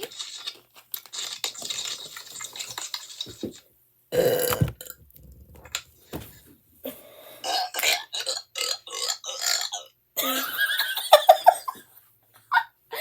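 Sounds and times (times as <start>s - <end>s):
person belching loudly: 4.2s - 4.8s.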